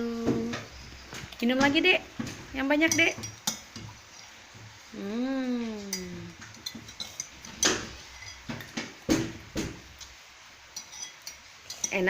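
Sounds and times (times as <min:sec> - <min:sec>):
person humming: 0:00.0 - 0:00.6, 0:04.9 - 0:06.4
spoon clinking on glass: 0:10.8 - 0:12.0.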